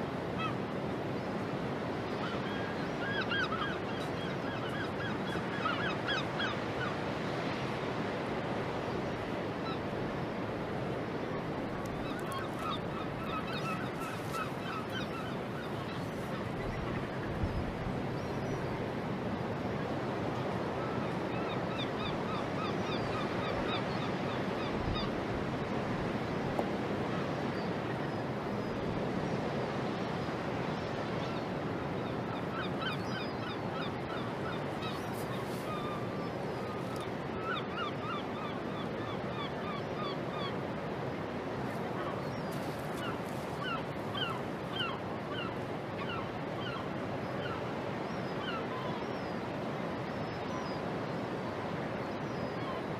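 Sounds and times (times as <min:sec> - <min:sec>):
waterfront background rush: 0:40.0 - 0:48.1.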